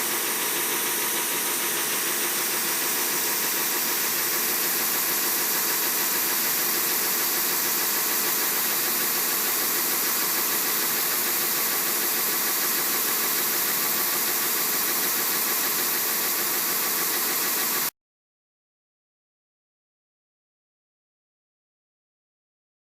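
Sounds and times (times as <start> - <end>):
belt sander running: 0.0 - 17.9.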